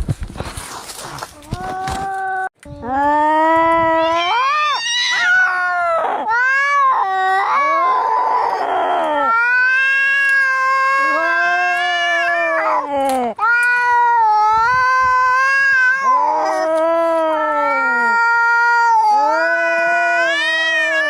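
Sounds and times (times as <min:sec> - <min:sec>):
cats yowling in a fight: 0:03.9 - 0:21.0.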